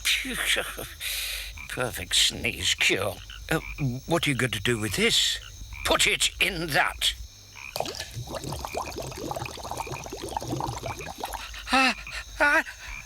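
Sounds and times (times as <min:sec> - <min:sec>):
cartoon liquid bubbling blips: 0:07.7 - 0:11.7.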